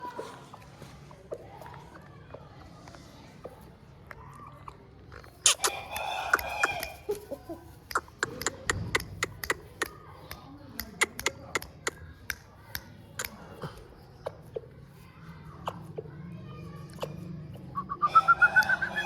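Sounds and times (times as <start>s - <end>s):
sharp irregular clicks: 7.9s - 13.4s.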